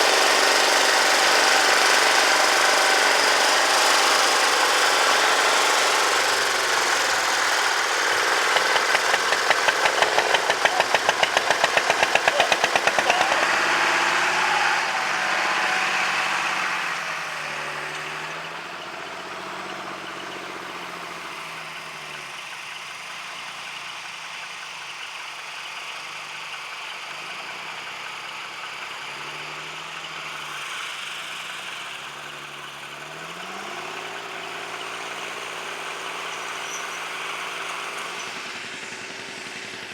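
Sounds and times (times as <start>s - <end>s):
rapid pulsing engine knock: 0.0s - 15.6s
tractor engine running: 0.0s - 39.9s.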